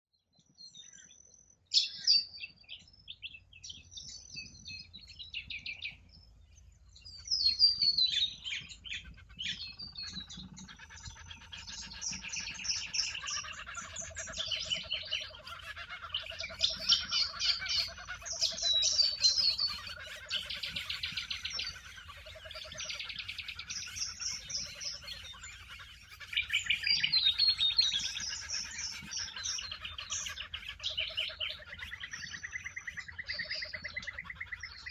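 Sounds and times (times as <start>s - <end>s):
chorus of bird songs: 0.0s - 34.9s
birds chirping and whistling: 0.6s - 34.9s.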